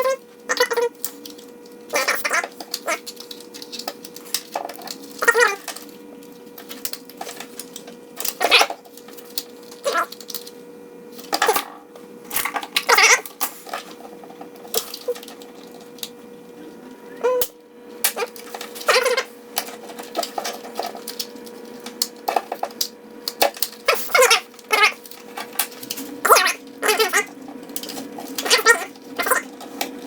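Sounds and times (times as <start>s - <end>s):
steady electrical hum: 0.0s - 30.0s.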